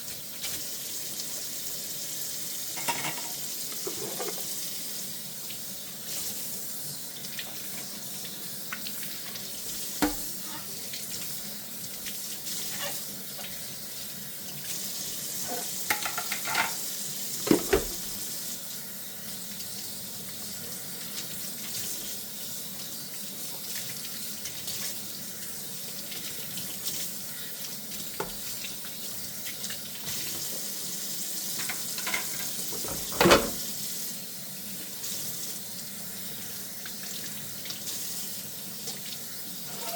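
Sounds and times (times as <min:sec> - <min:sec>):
tap water running into sink: 0:00.0 - 0:34.1, 0:34.8 - 0:39.9
dishes clinking: 0:02.8 - 0:04.5, 0:10.0 - 0:10.7, 0:15.9 - 0:16.8, 0:17.5 - 0:18.0, 0:31.6 - 0:33.6, 0:39.7 - 0:39.9.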